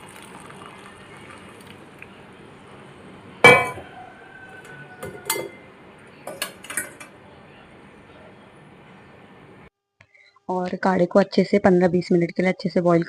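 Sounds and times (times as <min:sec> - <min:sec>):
kitchen utensils clinking: 0:03.4 - 0:04.0, 0:04.6 - 0:07.2.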